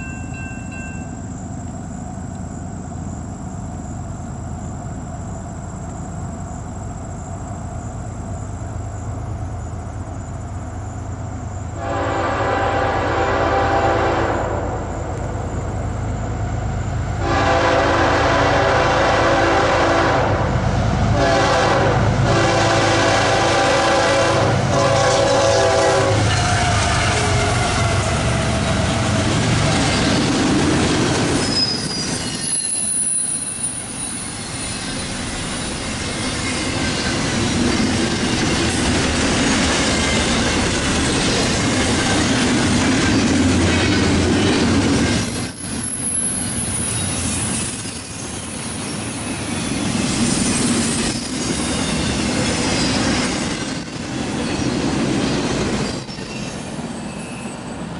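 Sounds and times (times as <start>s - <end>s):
train wheels rumbling on rails: 0.0s - 57.9s
high wheel squeals: 25.9s - 57.9s.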